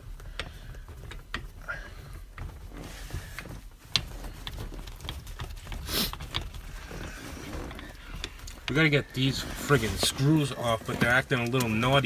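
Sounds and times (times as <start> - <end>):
hand tools clicking on metal: 3.4 - 12.0.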